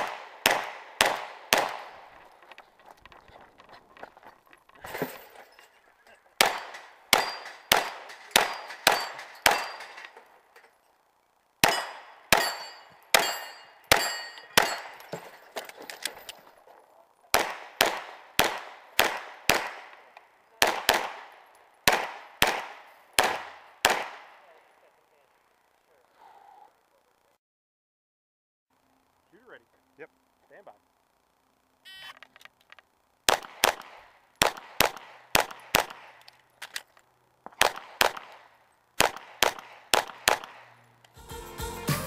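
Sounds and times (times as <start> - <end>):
rapid pistol fire: 0.0 - 2.3, 6.4 - 10.0, 11.6 - 15.0, 17.3 - 24.6, 33.2 - 36.2, 37.6 - 40.8
steel targets clanging: 4.0 - 10.9, 11.6 - 16.5.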